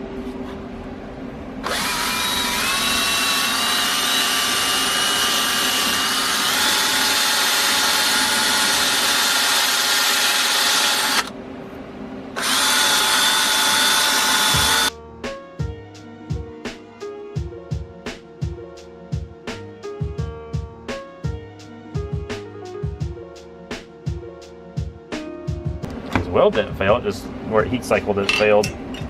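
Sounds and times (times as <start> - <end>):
wire brush power tool whining: 1.6 - 11.3, 12.4 - 14.9
music: 14.4 - 29.0.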